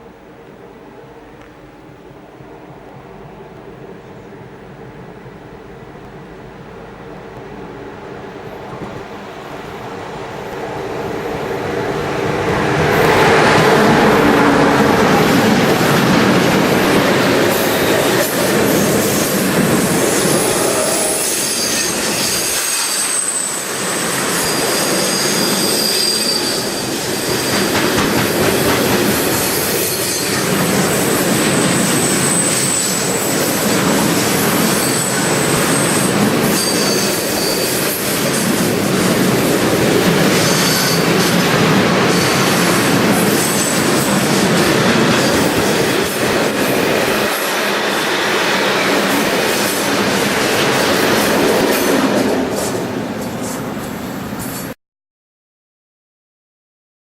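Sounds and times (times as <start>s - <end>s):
train wheels on rails: 0.0s - 54.8s
high-pitched wheel squeal: 20.0s - 27.8s, 29.4s - 30.5s, 31.5s - 33.6s, 34.3s - 38.4s, 40.2s - 41.5s.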